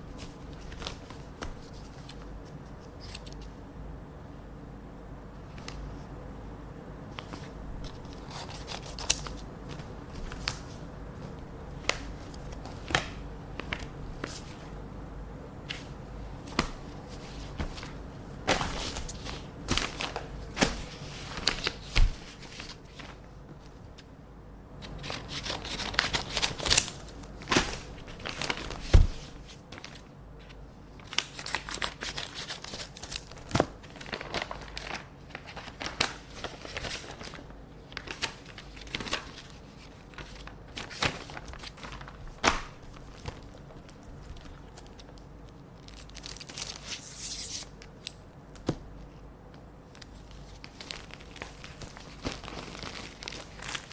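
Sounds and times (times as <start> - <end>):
paper tearing and crinkling: 24.8 - 30.0, 31.0 - 42.8, 45.9 - 47.7.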